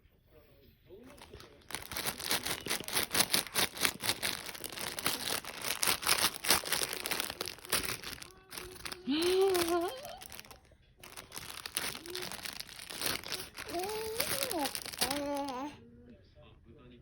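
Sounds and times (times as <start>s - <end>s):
crinkly material crumpling: 1.1s - 15.7s
baby vocalizing: 11.8s - 15.8s.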